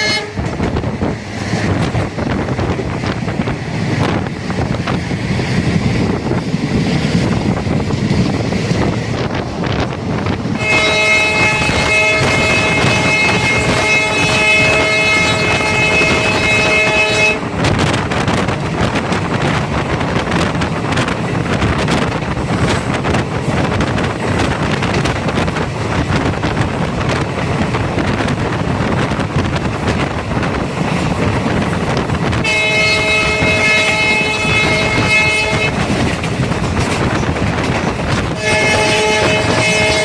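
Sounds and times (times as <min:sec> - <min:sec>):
train horn blast: 0:00.0 - 0:00.6, 0:10.5 - 0:17.9, 0:32.4 - 0:36.0, 0:38.2 - 0:40.0
moving train rumble and rattle: 0:00.0 - 0:40.0.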